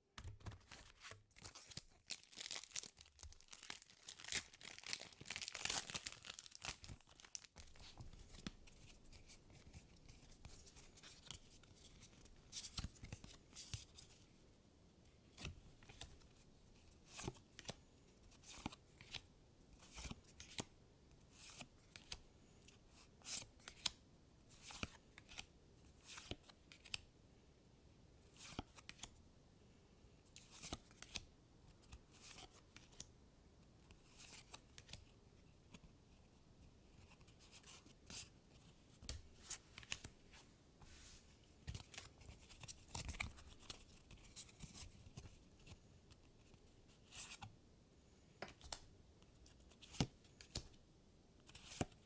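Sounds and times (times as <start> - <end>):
foil wrapper tearing and crinkling: 2.0 - 7.5.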